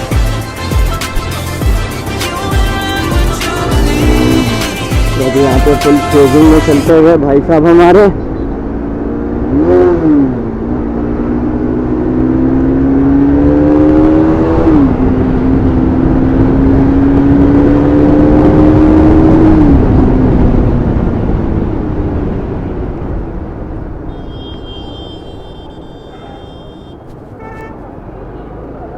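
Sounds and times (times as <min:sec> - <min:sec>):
motorcycle engine revving: 0:01.1 - 0:07.0, 0:24.1 - 0:28.9.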